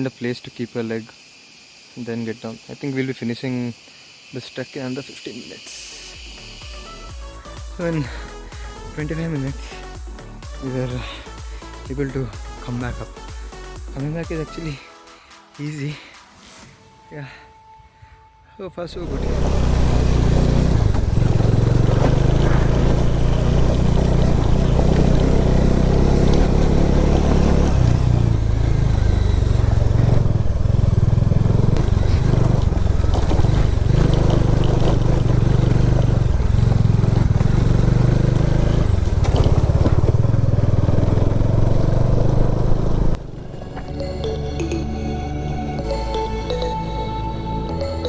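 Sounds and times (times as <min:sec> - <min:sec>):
motorcycle engine running: 0:18.9 - 0:48.0.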